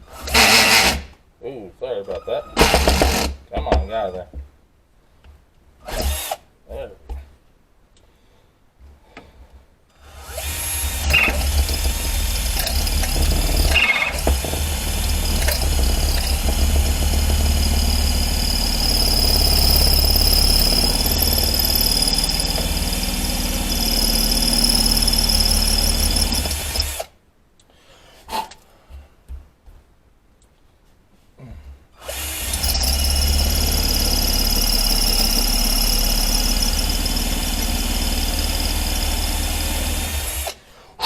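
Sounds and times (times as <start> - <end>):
power drill whining: 0.0 - 1.0, 2.6 - 3.3, 10.1 - 27.1, 32.0 - 40.6.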